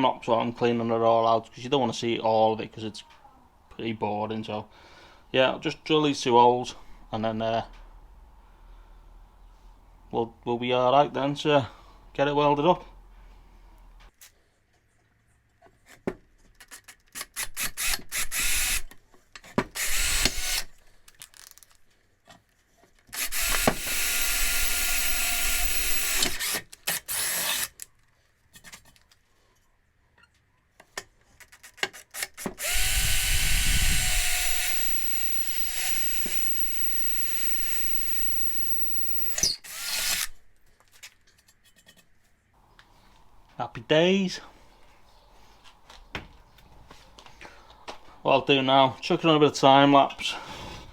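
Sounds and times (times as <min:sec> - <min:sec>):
electric drill whining: 0:17.8 - 0:18.9, 0:19.8 - 0:20.7, 0:23.2 - 0:27.7, 0:32.4 - 0:40.4.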